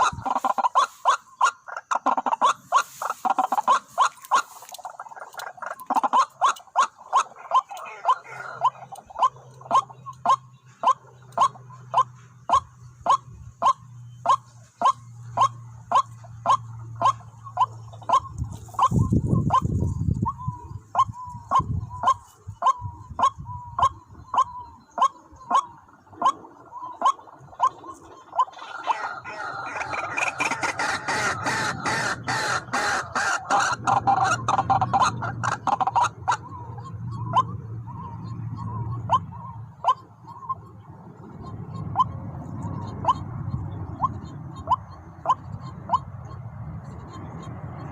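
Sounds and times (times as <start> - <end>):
waterhens croaking calls: 0.0 - 47.9
waterhen calling sharp notes: 26.7 - 37.5.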